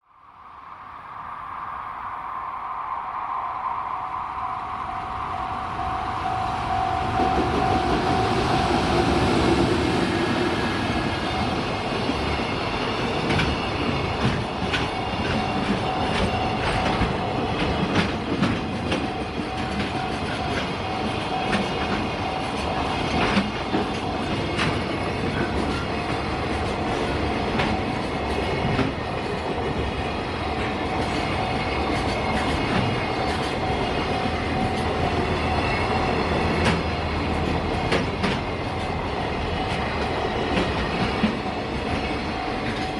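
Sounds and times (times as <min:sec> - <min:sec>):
electric locomotive passing: 0:00.0 - 0:42.9
wheels clacking over rail joints: 0:11.2 - 0:42.9.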